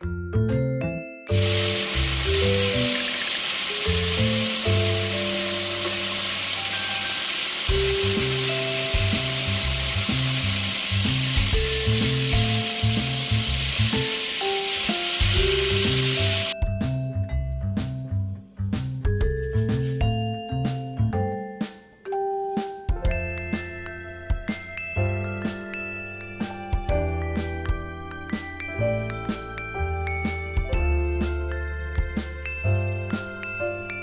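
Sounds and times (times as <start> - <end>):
background music: 0.0 - 34.0
vegetables sizzling in a pan: 1.3 - 16.6.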